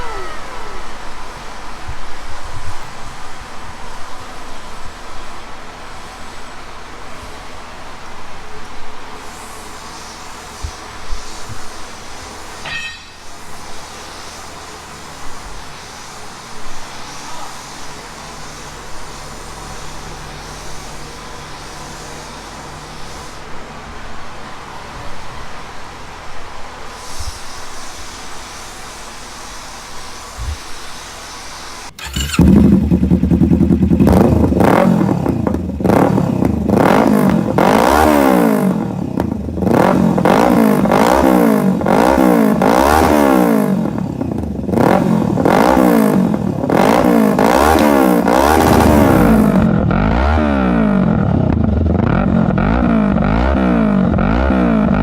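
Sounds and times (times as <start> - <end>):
motorcycle engine revving: 0.0 - 12.6, 31.8 - 55.0
workshop background noise: 0.0 - 32.4, 34.2 - 50.4.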